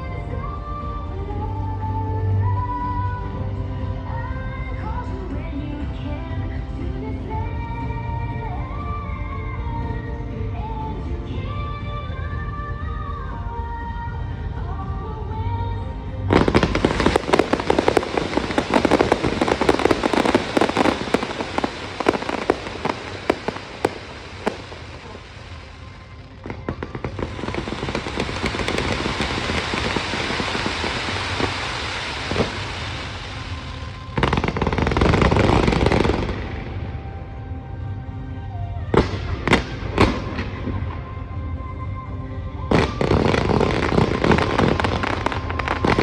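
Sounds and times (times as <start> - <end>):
music: 0.0 - 46.0
firecracker hiss: 16.3 - 36.7
firecrackers cracking: 16.3 - 36.7, 42.7 - 46.0.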